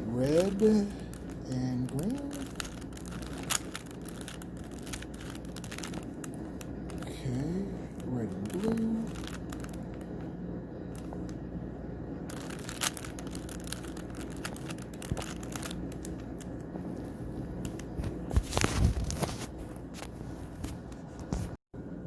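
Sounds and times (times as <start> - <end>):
puzzle cube clicking and scraping: 0.1 - 10.2, 12.3 - 17.0.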